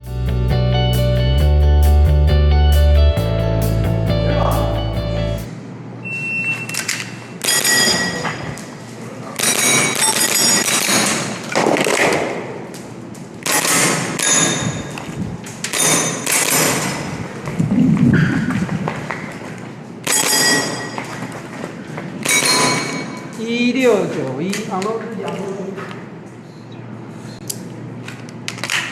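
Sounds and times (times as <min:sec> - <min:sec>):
metallic ring of steel targets: 0:07.4 - 0:08.6, 0:09.4 - 0:11.4, 0:13.5 - 0:15.0, 0:15.7 - 0:17.1, 0:20.0 - 0:21.1, 0:22.2 - 0:23.3
airsoft pistol shots: 0:09.4 - 0:12.5, 0:13.4 - 0:14.7, 0:15.7 - 0:17.0.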